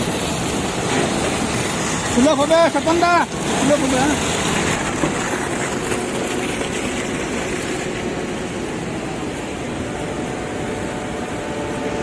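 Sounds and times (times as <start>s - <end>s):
construction machinery engine drone: 0.0s - 12.0s
faint hum: 6.4s - 12.0s.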